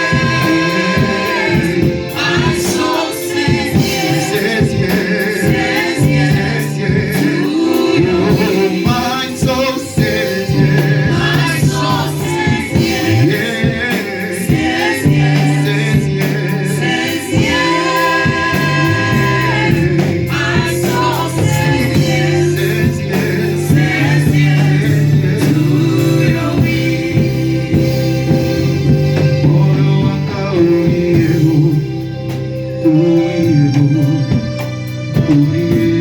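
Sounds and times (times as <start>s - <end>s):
gospel choir singing: 0.0s - 36.0s
held bass notes: 0.0s - 36.0s.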